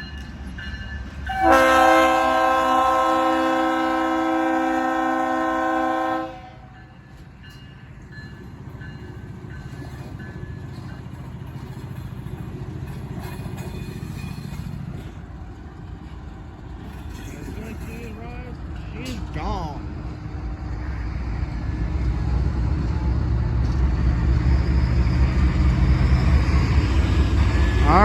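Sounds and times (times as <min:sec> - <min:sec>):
diesel locomotive engine droning: 0:00.0 - 0:28.0
locomotive air horn: 0:01.3 - 0:06.7.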